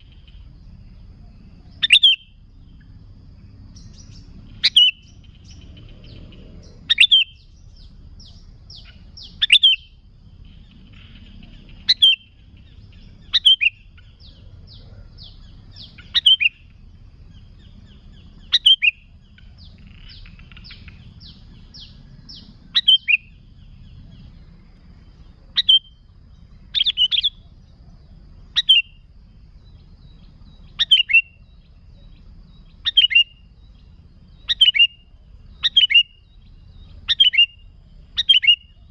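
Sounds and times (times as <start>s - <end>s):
low background rumble: 0.0s - 38.9s
bird call notes: 1.2s - 2.9s, 3.8s - 24.5s, 25.1s - 38.9s.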